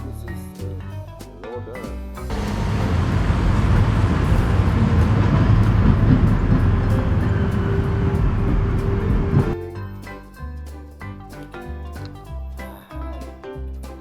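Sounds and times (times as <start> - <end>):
heavy engine rumbling: 2.3 - 9.6.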